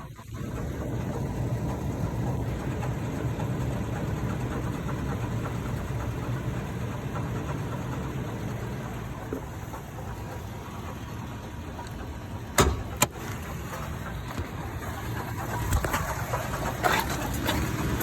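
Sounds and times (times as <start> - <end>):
truck engine idling: 0.0 - 18.0
compressor clutch clunking: 11.8 - 14.6.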